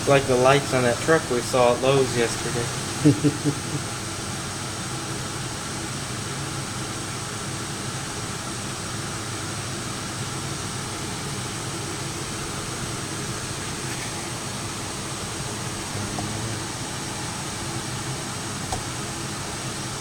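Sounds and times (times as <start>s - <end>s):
dehumidifier fan noise: 0.0s - 20.0s
low hum: 12.1s - 19.6s.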